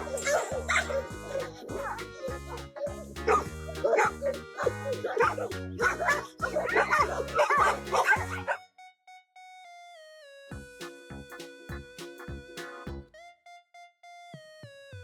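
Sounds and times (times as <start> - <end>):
background music with beat: 0.0 - 8.5, 10.5 - 13.2
dog barking: 0.0 - 8.6.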